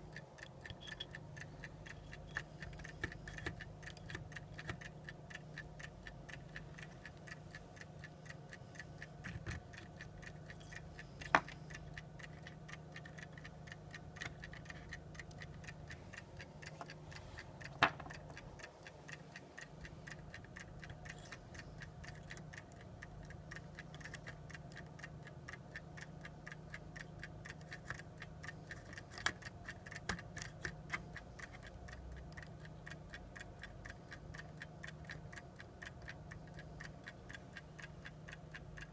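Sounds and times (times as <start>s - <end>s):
clock ticking fast: 0.0s - 38.9s.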